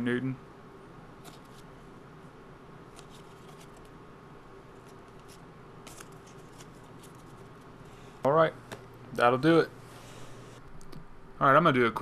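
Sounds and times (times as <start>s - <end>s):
low room hum: 0.0s - 12.0s
trading cards rustling: 1.2s - 1.8s, 2.8s - 4.0s, 4.7s - 8.2s.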